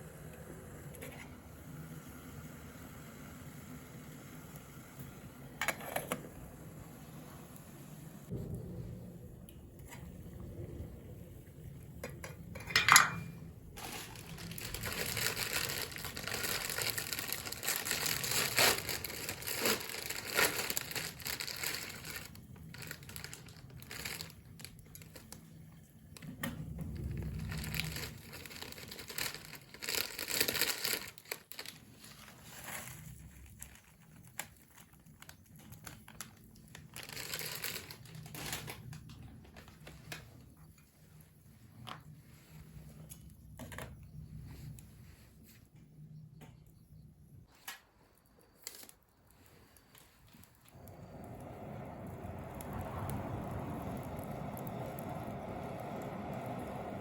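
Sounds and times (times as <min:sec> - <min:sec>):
crinkling and crumpling handling noise: 0:12.0 - 0:46.6, 0:47.4 - 0:57.0.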